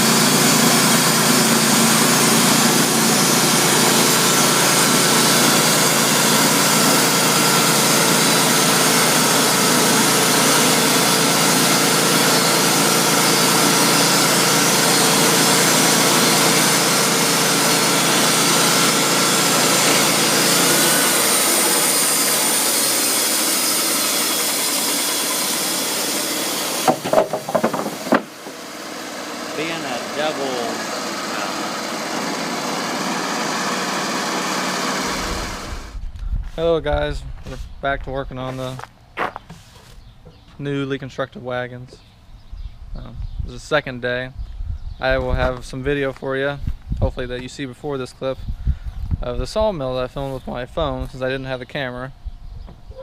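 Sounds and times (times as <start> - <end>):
band sawmill cutting log: 0.0 - 36.0, 38.4 - 41.5
sharp knocks: 26.8 - 28.6.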